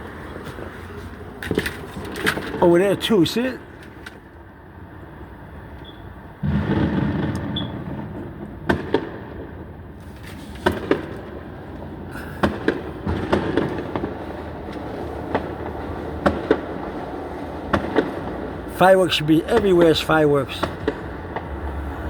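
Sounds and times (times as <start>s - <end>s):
fireworks popping and cracking: 0.1s - 4.4s, 6.4s - 21.8s
fireworks boom: 6.4s - 21.8s.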